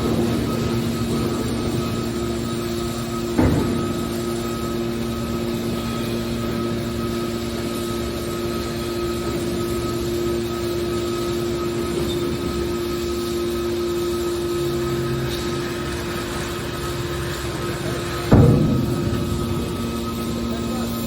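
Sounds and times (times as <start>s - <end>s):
baler motor and pump humming: 0.0s - 21.0s.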